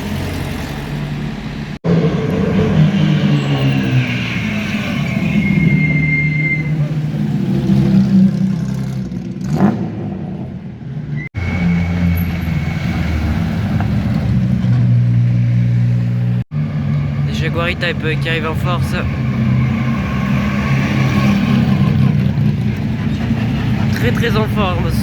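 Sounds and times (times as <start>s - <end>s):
sports car engines driving past: 1.9s - 25.0s.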